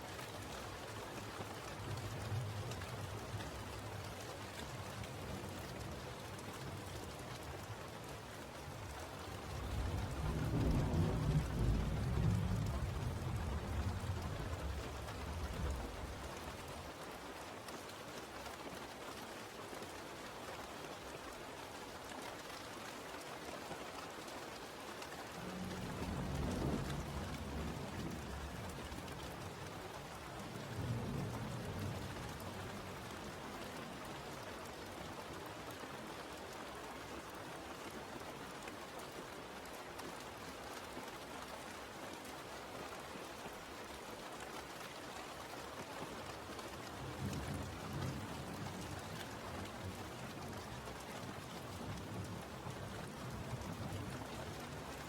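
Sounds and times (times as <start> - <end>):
steady rain falling: 0.0 - 55.0
low rolls of thunder: 9.3 - 16.9, 25.3 - 34.0, 46.7 - 55.0.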